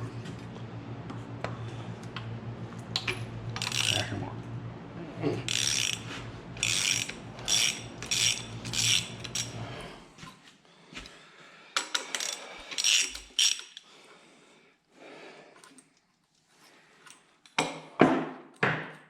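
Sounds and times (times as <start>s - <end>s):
ratchet wrench clicking: 3.0s - 4.1s, 5.5s - 9.6s, 11.8s - 13.8s.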